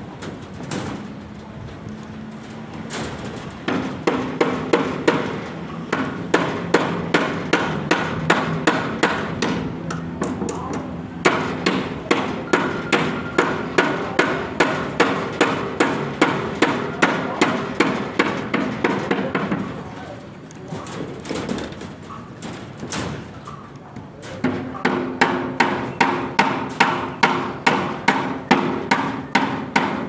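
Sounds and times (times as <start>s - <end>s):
hammer nailing wooden boards: 3.7s - 19.8s, 24.4s - 30.0s.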